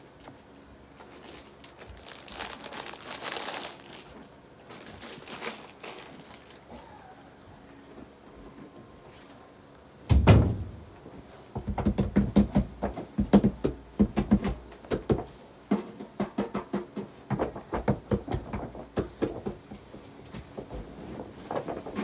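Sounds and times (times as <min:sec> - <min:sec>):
loud thump: 0:10.1 - 0:11.0.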